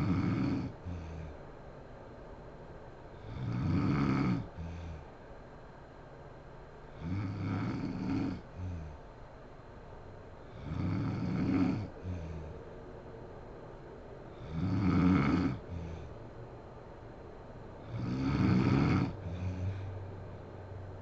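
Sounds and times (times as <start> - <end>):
woman snoring: 0.0 - 1.4, 3.2 - 5.1, 6.9 - 9.1, 10.5 - 12.6, 14.3 - 16.2, 17.8 - 20.0
soft breath out: 0.8 - 1.5, 4.6 - 5.2, 19.2 - 20.6.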